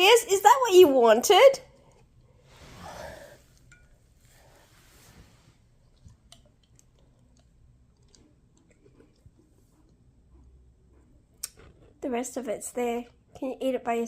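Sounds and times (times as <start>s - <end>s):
dog chewing: 5.8s - 12.0s.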